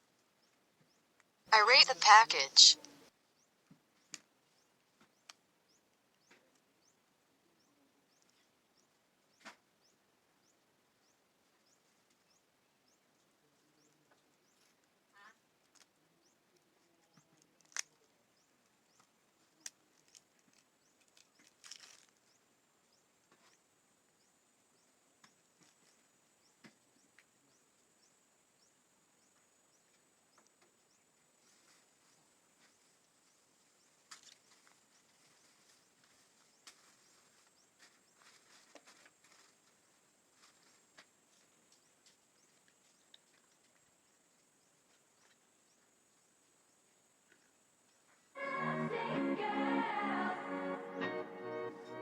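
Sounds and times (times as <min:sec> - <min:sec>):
faint steady hiss: 0:00.0 - 0:52.0
package rustling: 0:21.0 - 0:22.2.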